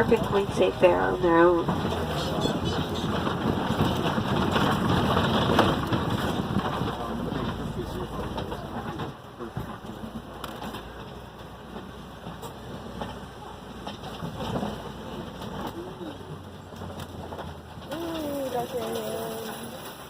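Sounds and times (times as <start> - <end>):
vehicle low rumble: 0.0 - 20.0.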